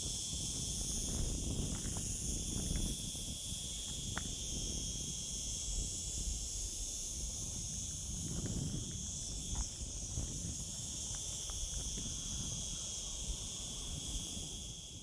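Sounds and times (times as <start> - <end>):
insects chirring: 0.0 - 15.0
wind rumble on microphone: 0.0 - 15.0.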